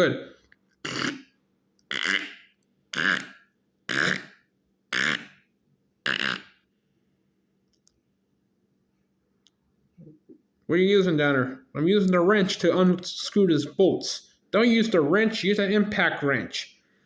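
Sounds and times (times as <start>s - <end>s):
person making burp-like sounds: 0.8s - 5.4s, 6.1s - 6.6s.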